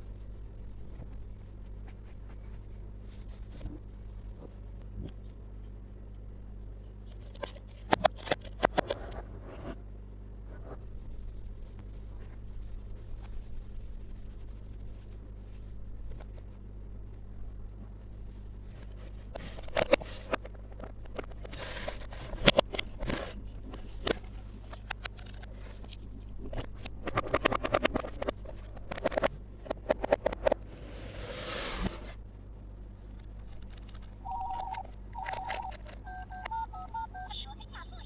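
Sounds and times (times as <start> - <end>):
short electronic beeping tones: 34.2 - 37.3.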